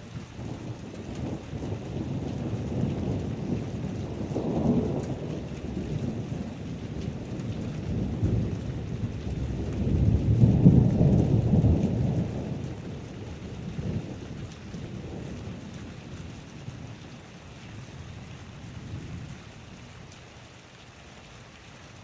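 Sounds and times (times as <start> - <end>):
heavy rain: 0.0 - 22.0
deep thunder rumbling: 0.4 - 20.2.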